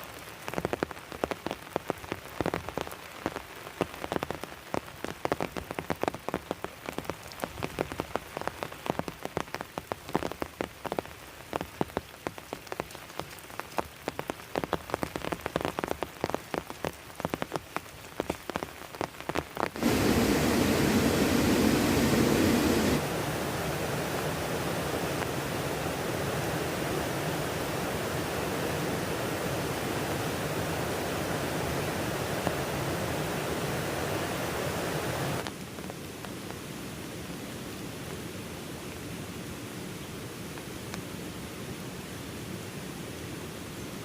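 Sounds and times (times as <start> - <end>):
heavy rain on hard surface: 0.0 - 44.0
even rushing noise: 19.8 - 33.1.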